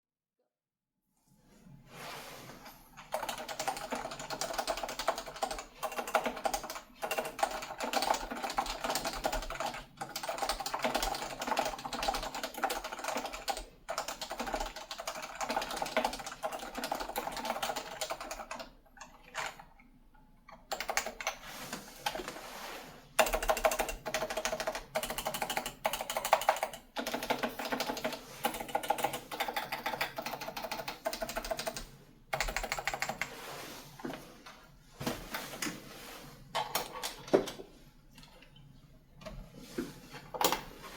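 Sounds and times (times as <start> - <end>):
keyboard typing: 3.0 - 19.7, 20.7 - 21.4, 23.2 - 33.3.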